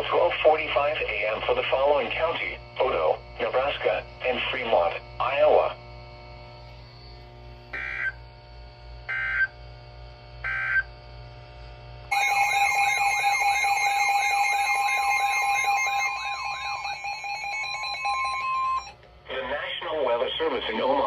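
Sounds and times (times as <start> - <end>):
buzzy data bursts: 0.0 - 10.9, 12.1 - 21.0
warbling alert tone: 12.1 - 18.9.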